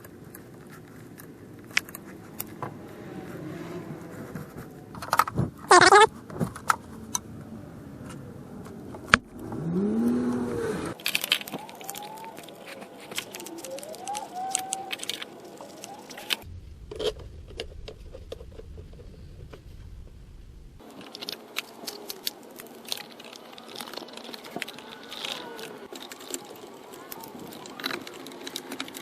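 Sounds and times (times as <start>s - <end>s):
low hum: 15.1s - 21.1s
clicks and clatter of tools: 20.8s - 29.0s.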